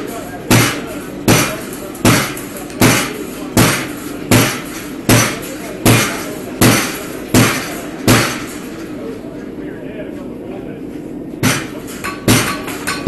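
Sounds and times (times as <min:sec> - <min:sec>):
hammer striking metal on anvil: 0:00.0 - 0:08.8, 0:11.4 - 0:13.0.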